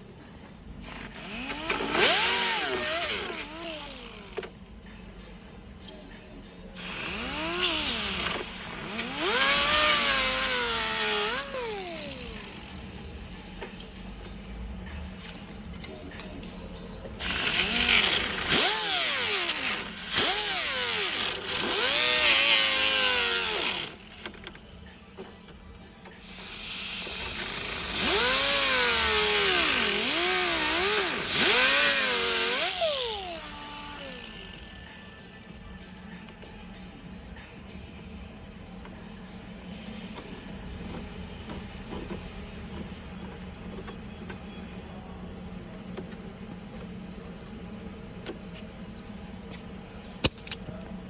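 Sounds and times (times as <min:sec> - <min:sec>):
power tool motor spinning: 0:00.9 - 0:04.3, 0:06.8 - 0:12.8, 0:17.2 - 0:24.2, 0:26.2 - 0:34.9.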